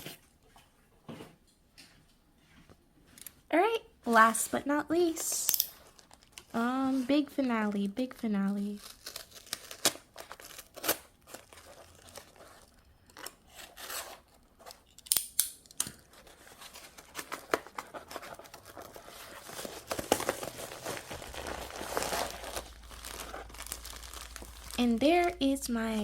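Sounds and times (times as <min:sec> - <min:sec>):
plastic packaging crinkling: 0:05.3 - 0:15.0, 0:16.0 - 0:26.0.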